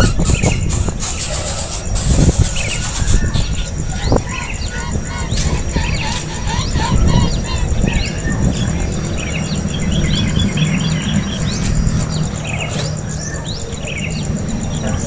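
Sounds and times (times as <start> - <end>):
small birds chirping: 0.0 - 15.0
steady low rumble: 0.0 - 15.0.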